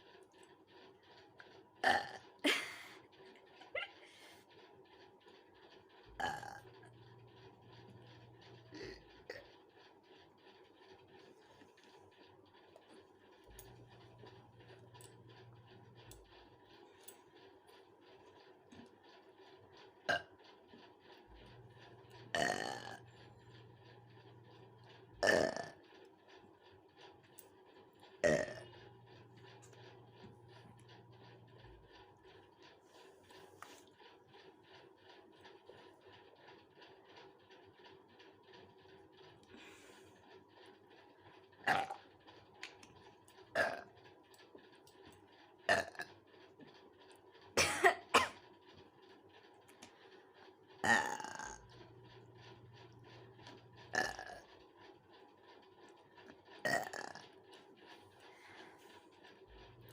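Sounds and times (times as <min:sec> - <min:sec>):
woman burping: 0:01.8 - 0:02.9.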